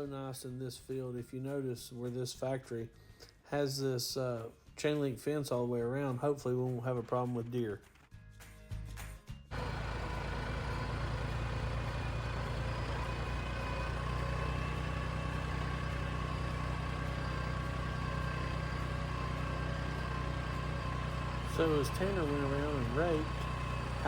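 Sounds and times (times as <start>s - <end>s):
engine running with low hum: 9.5s - 24.0s.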